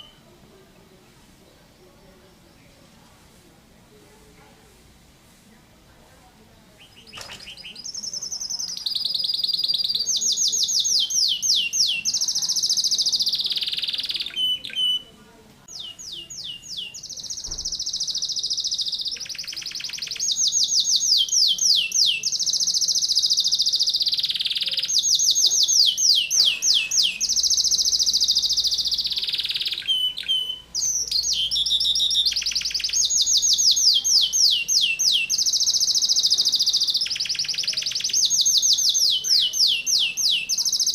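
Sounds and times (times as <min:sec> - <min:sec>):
canary singing trills: 0:00.0 - 0:00.4, 0:06.7 - 0:40.9.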